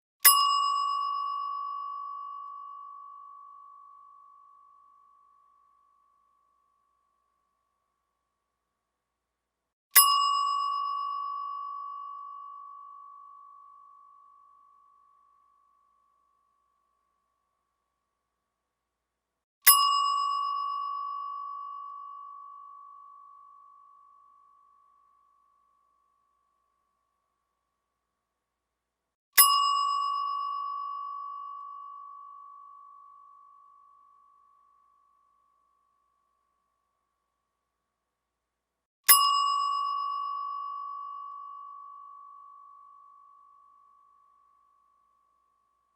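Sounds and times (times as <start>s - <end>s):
metal bell ringing: 0.3s - 3.2s.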